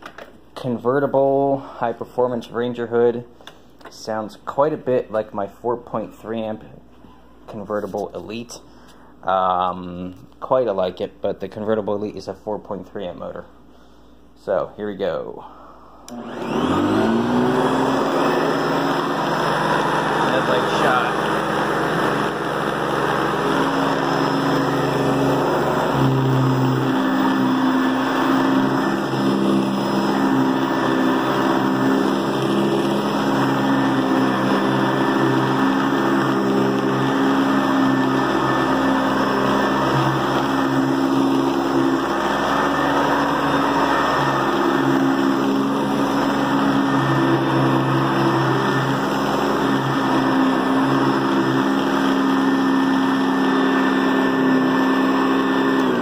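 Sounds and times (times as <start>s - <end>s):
upright vacuum running: 16.0s - 56.0s.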